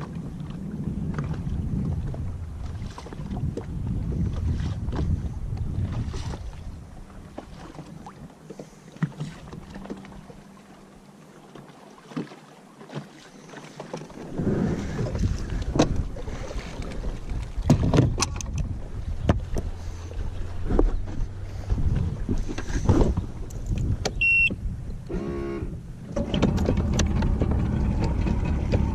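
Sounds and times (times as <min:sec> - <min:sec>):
wind rumbling on microphone: 0:00.0 - 0:08.4, 0:14.1 - 0:28.9.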